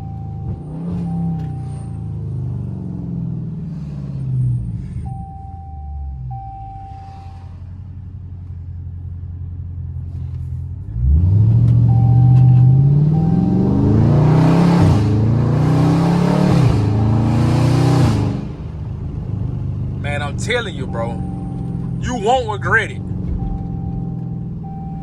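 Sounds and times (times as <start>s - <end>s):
v eight engine exhaust revving: 10.9s - 25.0s.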